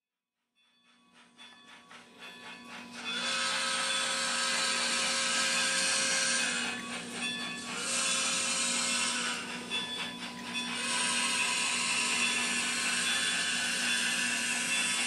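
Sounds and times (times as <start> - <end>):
faint rhythmic steam strokes: 0.6 - 15.0
loud steam hiss: 10.8 - 15.0.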